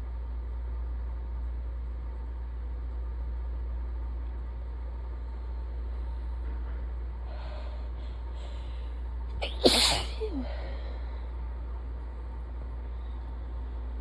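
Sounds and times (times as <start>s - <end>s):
soft breaths: 7.2s - 11.5s
person sneezing: 9.4s - 10.6s.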